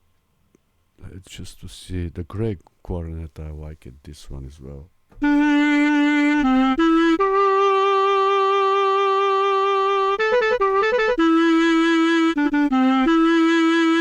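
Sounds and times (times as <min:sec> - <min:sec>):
reed woodwind melody: 0:05.2 - 0:14.0.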